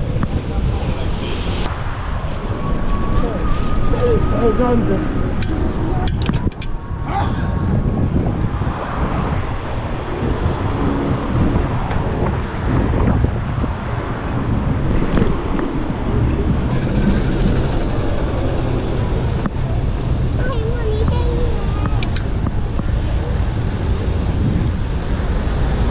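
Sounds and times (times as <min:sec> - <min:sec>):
road traffic rumble: 0:00.0 - 0:25.9.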